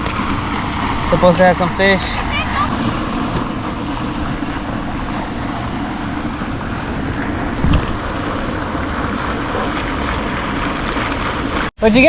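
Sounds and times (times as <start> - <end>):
wind buffeting microphone: 0.0 - 11.6
low thump: 7.2 - 8.4.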